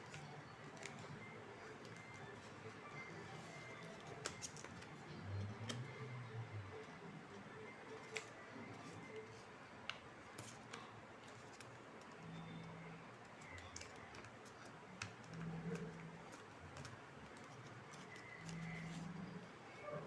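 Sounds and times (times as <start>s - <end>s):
faint low hum: 0.0s - 20.0s
paper being handled and folded: 0.0s - 20.0s.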